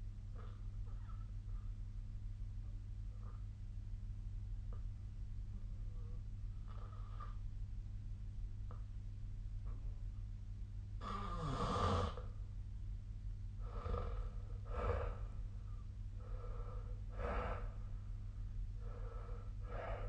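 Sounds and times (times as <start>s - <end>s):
quiet breaths: 0.0s - 7.6s, 11.0s - 12.6s, 13.5s - 20.0s
person snoring: 11.0s - 12.3s, 13.6s - 15.3s.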